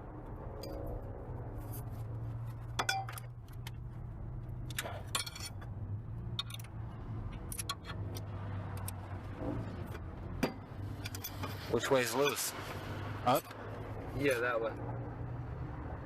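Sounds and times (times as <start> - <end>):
wrench clinking on metal: 4.7 - 5.6.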